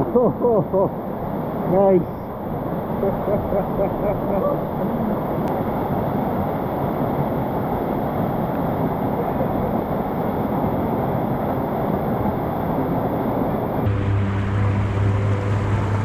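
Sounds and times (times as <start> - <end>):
rushing water: 0.0 - 16.0
low hum: 9.0 - 16.0.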